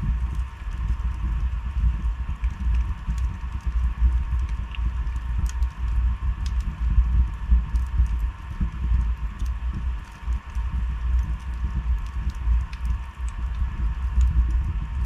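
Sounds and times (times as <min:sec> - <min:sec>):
wood fire crackling and popping: 0:00.1 - 0:15.0.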